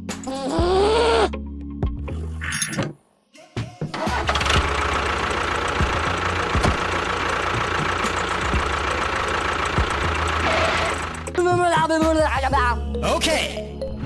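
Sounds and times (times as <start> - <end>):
small motor whining: 4.1 - 11.3.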